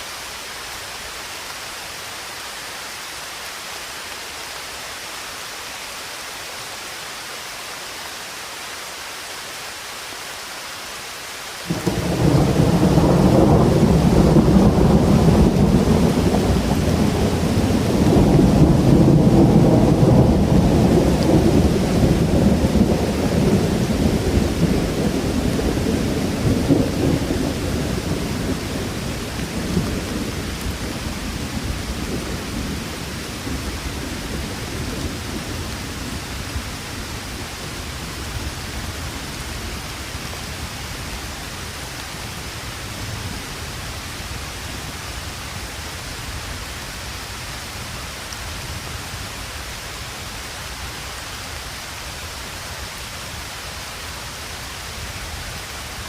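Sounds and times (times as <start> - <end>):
rain hiss: 0.0 - 56.0
thunder rumbling: 11.7 - 38.5.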